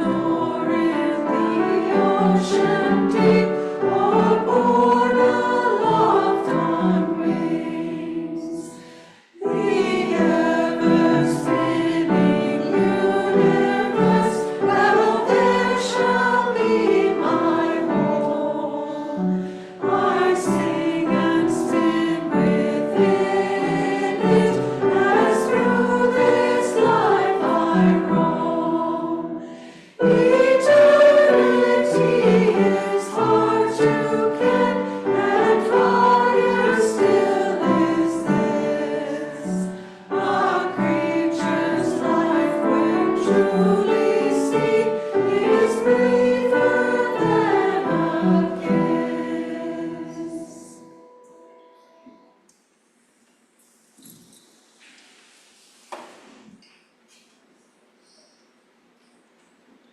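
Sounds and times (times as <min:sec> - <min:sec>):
choir singing: 0:00.0 - 0:52.4.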